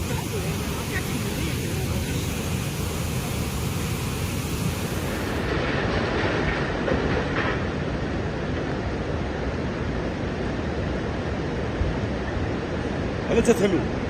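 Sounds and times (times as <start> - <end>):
loud rushing noise: 0.0 - 8.4.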